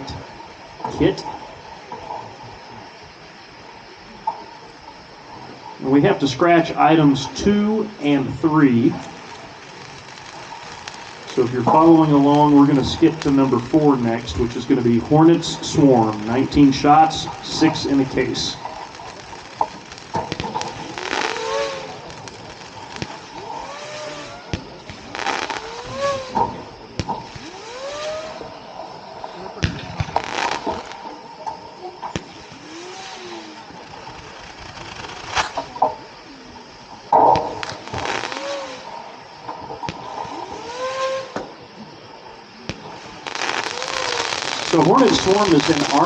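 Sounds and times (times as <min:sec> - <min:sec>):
fireworks crackling: 0:00.0 - 0:46.0
rising fireworks whistles: 0:00.0 - 0:46.0
fireworks launch thumps: 0:08.6 - 0:28.5, 0:29.6 - 0:36.2, 0:37.1 - 0:41.6, 0:42.6 - 0:46.0.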